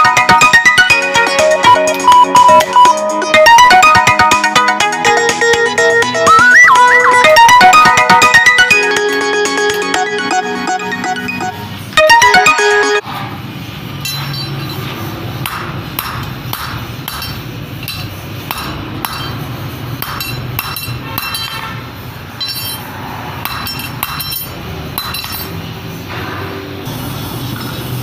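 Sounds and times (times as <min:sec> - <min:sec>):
hammer striking steel rod: 0:15.4 - 0:19.4, 0:20.0 - 0:21.6, 0:23.5 - 0:25.5.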